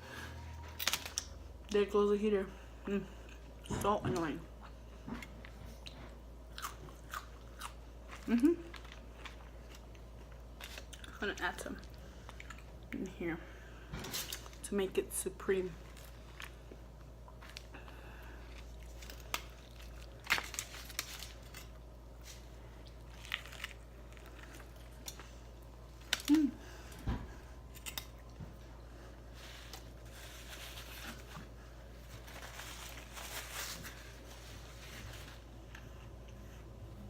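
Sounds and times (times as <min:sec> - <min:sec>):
steady low hum: 0:00.0 - 0:37.0
food packaging crinkling: 0:00.6 - 0:01.4, 0:07.2 - 0:11.2, 0:15.8 - 0:26.9, 0:29.2 - 0:35.5.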